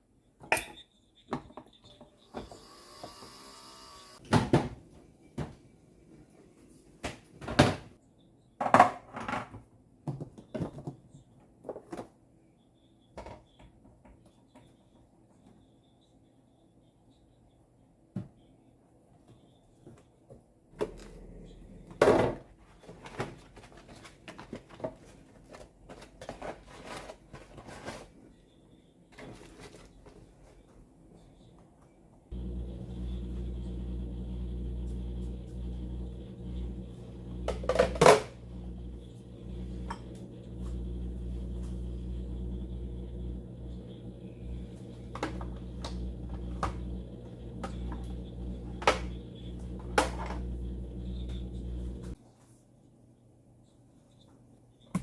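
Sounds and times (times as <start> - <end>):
steady low hum: 32.3 - 52.2.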